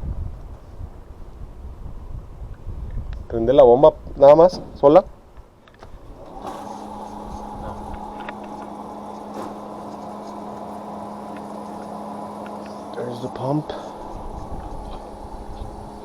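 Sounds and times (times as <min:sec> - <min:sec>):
water pump humming: 0:06.1 - 0:16.0.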